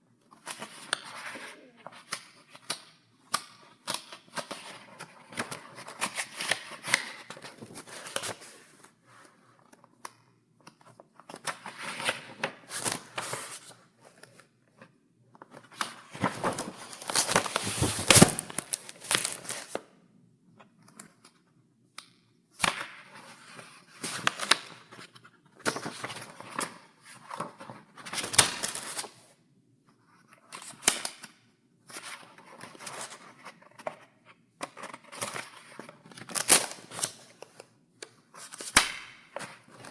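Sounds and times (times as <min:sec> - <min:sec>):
paper pages turning: 0:15.8 - 0:19.8.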